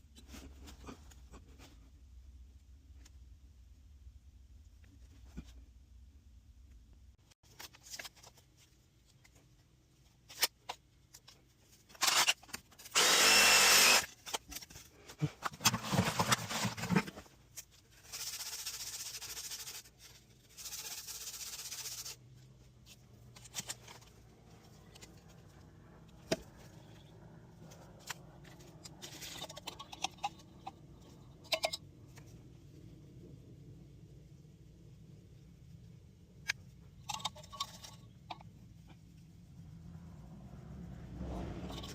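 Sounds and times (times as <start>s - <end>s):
power tool whining: 12.9s - 14.1s.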